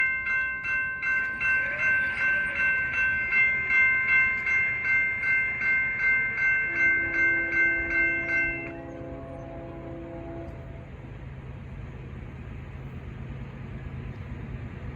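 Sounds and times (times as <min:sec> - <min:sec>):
bell ringing quickly: 0:00.0 - 0:08.7
low rumble of train: 0:00.0 - 0:14.9
locomotive horn chord: 0:06.7 - 0:10.9.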